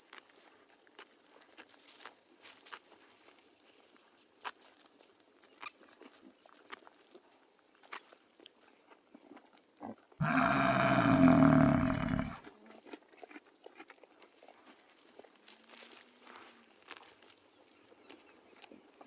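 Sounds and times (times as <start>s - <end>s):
large animal call: 10.2s - 12.4s.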